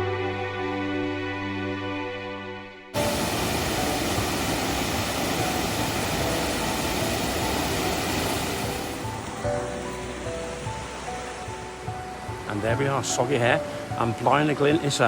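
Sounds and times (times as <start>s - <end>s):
faint music: 0.0s - 15.0s
waterfall rushing: 3.0s - 15.0s.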